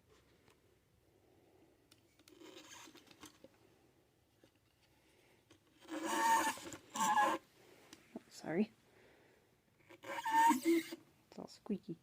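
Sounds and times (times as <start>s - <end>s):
faint plastic scraping: 1.9s - 3.7s, 4.4s - 8.3s
loud plastic squeak: 2.3s - 3.2s, 5.8s - 7.4s, 9.8s - 11.0s.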